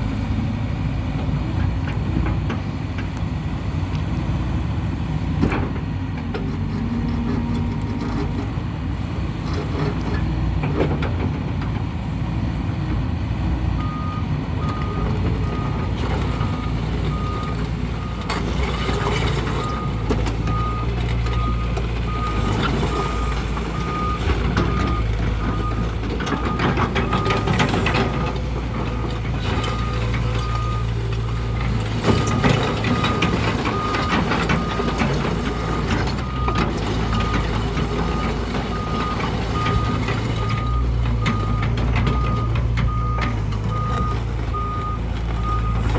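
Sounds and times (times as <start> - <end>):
excavator engine humming: 0.0 - 45.9
reversing alarm beeping: 13.8 - 18.2, 29.0 - 45.9.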